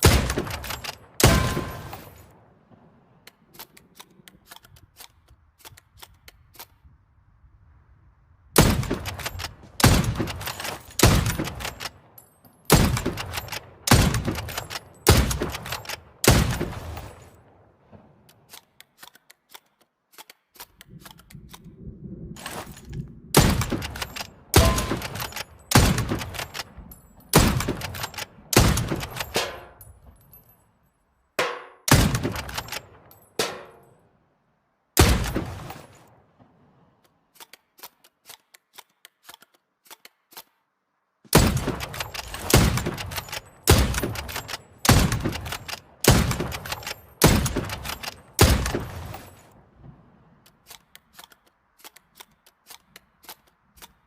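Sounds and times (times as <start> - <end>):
rifle shots: 0.0 - 2.8, 8.6 - 12.1, 12.7 - 17.4, 23.4 - 29.8, 31.4 - 33.8, 35.0 - 36.0, 41.3 - 49.5.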